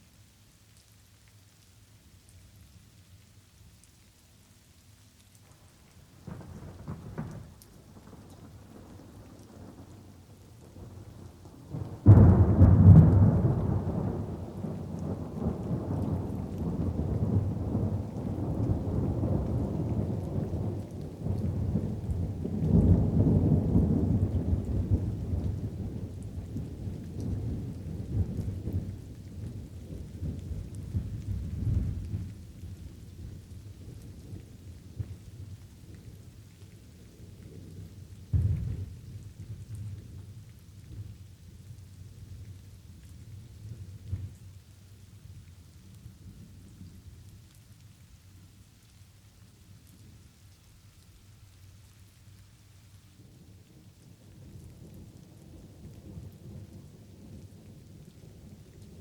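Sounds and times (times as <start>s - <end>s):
rain patter: 0.0s - 59.0s
thunder rumbling: 10.7s - 33.0s, 38.3s - 40.3s.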